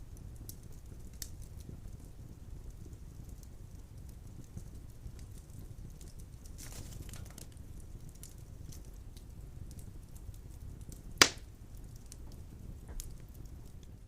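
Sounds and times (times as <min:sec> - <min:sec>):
faint fire crackles: 0:00.0 - 0:14.0
fire rumbling: 0:00.0 - 0:14.0
sharp pop from fire: 0:11.2 - 0:11.5.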